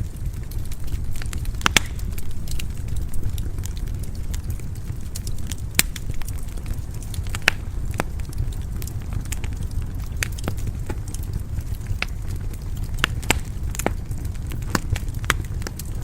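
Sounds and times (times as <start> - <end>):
low rumble of flames: 0.0 - 16.0
wood fire crackling and popping: 0.0 - 16.0.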